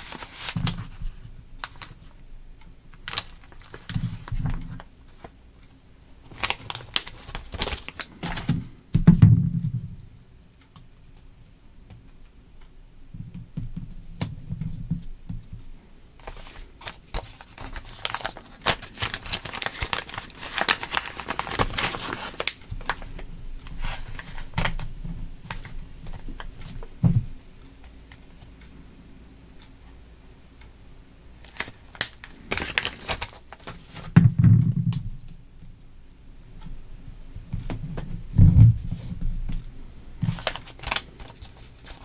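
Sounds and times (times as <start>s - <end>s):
plastic tape and card crinkling: 0.0s - 2.1s, 3.0s - 5.4s, 6.3s - 8.6s, 16.2s - 26.9s, 31.4s - 34.1s, 39.6s - 42.0s.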